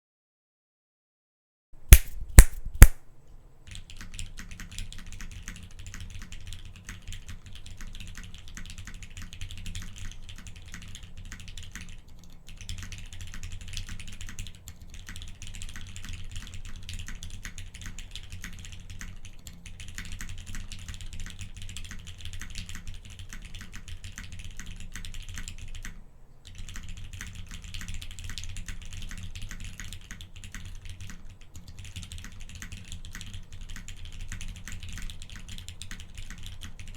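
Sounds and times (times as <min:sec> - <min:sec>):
mechanical keyboard typing: 0:17.8 - 0:26.0, 0:26.6 - 0:36.8.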